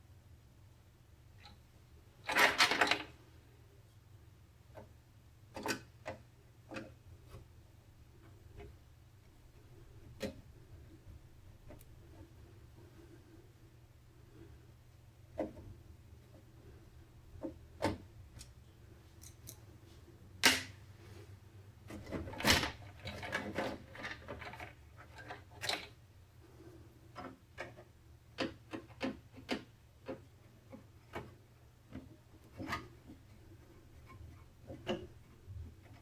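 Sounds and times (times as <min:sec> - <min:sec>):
computer parts clicking and knocking: 0:27.2 - 0:31.3.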